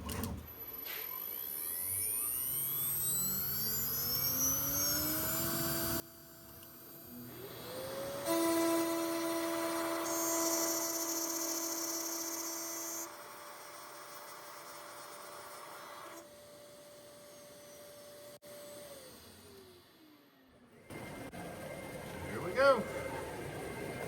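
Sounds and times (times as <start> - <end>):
router spindle whining: 0.0 - 24.0
router cutting wood: 1.2 - 20.2.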